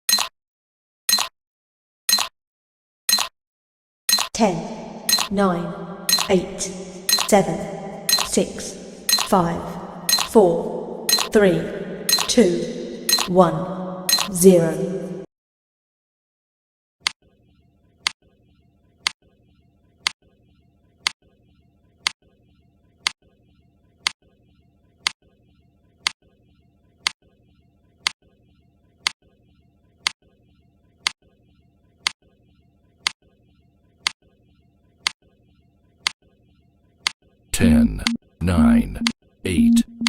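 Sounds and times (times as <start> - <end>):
sharp timer ticks: 0.1 - 0.3, 1.1 - 1.3, 2.1 - 2.3, 3.1 - 3.3, 4.1 - 4.4, 5.0 - 10.4, 11.0 - 13.4, 14.1 - 14.4.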